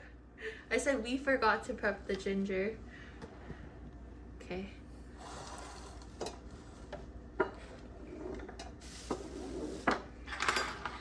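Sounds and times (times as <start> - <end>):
dishes scraping and clattering: 5.4 - 11.0
utensils and dishes clinking: 10.3 - 11.0.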